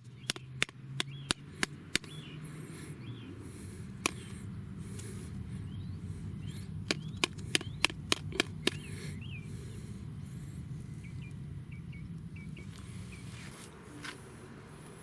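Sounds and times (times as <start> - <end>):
sharp clicks or taps: 0.2 - 2.2, 6.8 - 8.9
steady low hum: 0.7 - 15.0.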